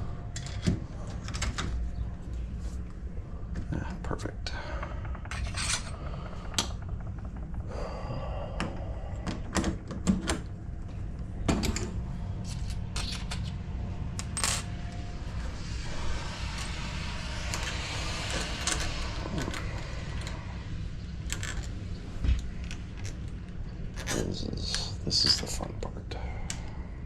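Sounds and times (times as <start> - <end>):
hissy scratching noise: 14.7 - 23.3.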